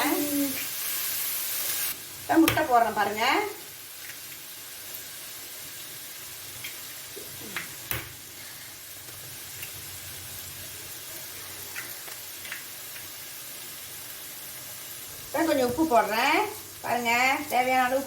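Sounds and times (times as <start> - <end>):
food sizzling in oil: 0.0 - 18.0.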